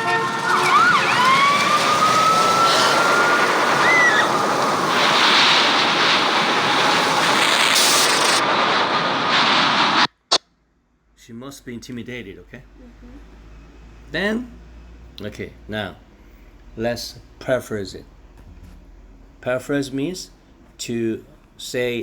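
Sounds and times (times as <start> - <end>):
siren wailing: 0.0 - 9.3
loud rushing noise: 0.0 - 10.1.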